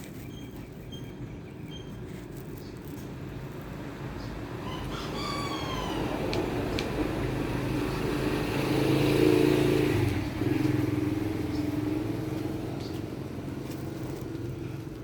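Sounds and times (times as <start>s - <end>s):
vehicle engine passing: 3.8s - 15.0s.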